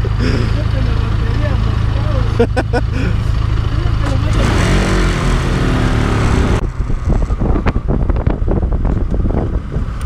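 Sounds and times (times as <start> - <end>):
motorcycle engine running: 0.0 - 10.0
wind rushing over microphone: 4.4 - 10.0.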